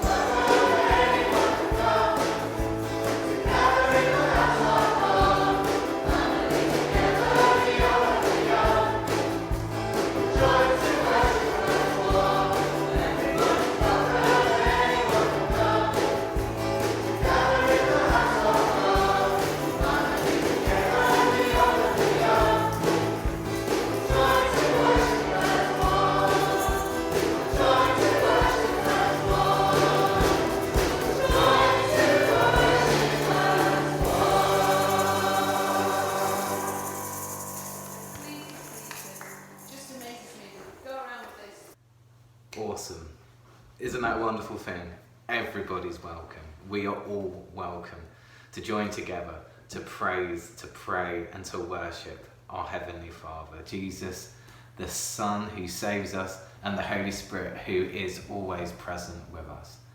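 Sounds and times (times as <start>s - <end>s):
band with held bass line: 0.0s - 37.6s
group of voices singing: 0.0s - 38.0s.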